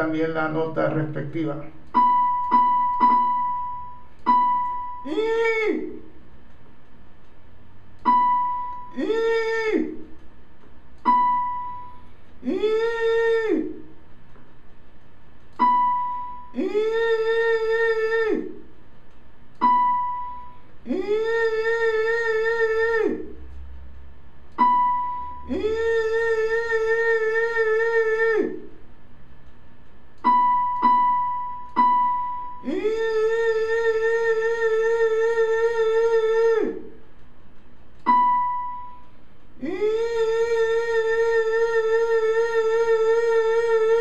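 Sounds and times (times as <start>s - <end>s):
keyboard single notes: 1.9s - 5.5s.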